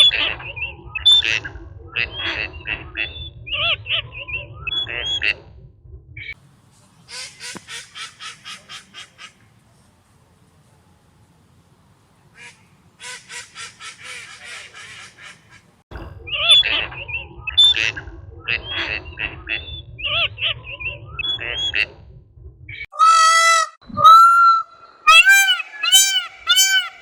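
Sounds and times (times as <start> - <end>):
duck quacking: 12.4 - 15.7, 25.1 - 27.0
high-pitched bird calls: 23.0 - 27.0.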